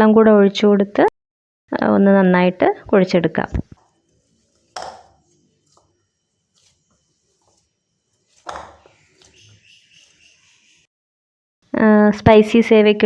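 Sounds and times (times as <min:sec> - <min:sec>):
hands kneading dough: 0:03.6 - 0:10.5.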